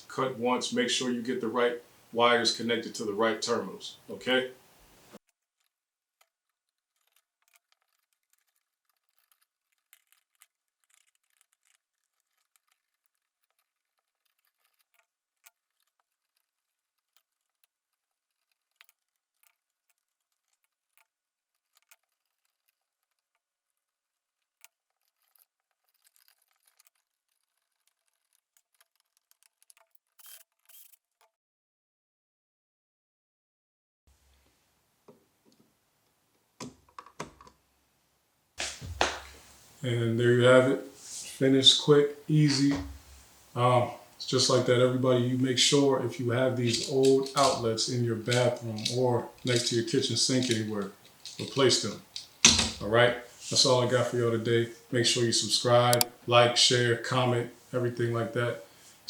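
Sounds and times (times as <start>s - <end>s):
faint clicks and ticks: 5.2s - 31.3s, 42.4s - 55.2s, 55.8s - 56.4s.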